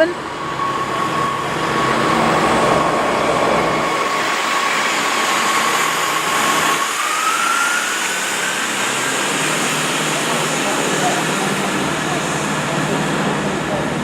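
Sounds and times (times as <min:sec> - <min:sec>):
diesel train engine running: 0:00.0 - 0:14.0
thin rising whine: 0:00.2 - 0:11.1.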